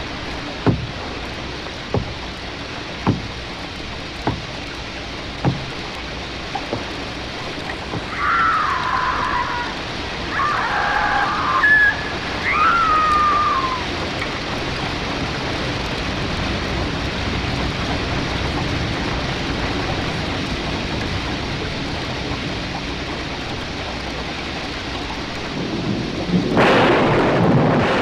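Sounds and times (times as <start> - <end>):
steady hiss: 0.0 - 27.8
falling wailing cries: 8.0 - 14.0.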